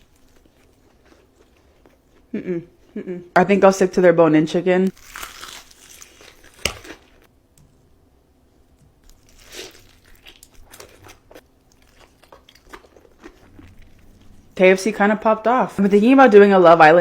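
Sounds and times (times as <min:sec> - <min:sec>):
person chewing crunchy food: 0:00.0 - 0:03.0, 0:04.9 - 0:07.3, 0:09.0 - 0:14.6.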